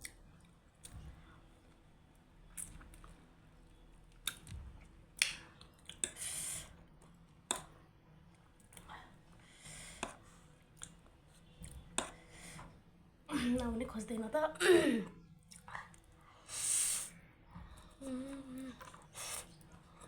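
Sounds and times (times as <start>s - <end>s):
mouth clicks and smacks: 4.2s - 4.6s, 5.2s - 6.2s, 7.5s - 7.8s.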